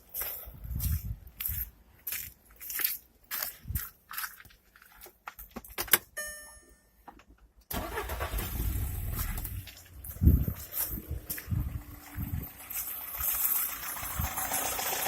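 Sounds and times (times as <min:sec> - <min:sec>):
brief tone: 0:06.2 - 0:07.0
car engine starting and running: 0:07.7 - 0:15.0.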